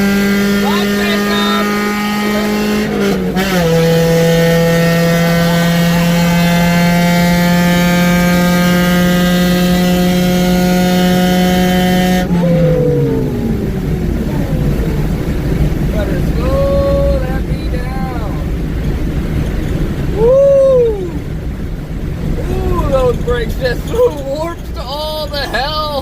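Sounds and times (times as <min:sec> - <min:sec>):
car engine revving hard: 0:00.0 - 0:20.2
road and wind noise: 0:00.0 - 0:26.0.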